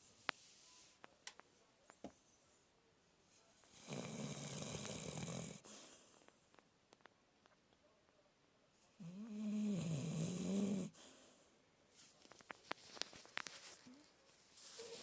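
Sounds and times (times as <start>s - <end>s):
person snoring: 3.8s - 5.6s, 9.0s - 11.0s.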